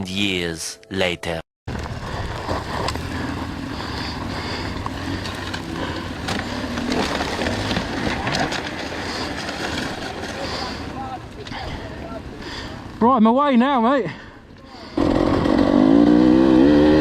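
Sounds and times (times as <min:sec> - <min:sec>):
dirt bike engine running: 0:01.7 - 0:13.2.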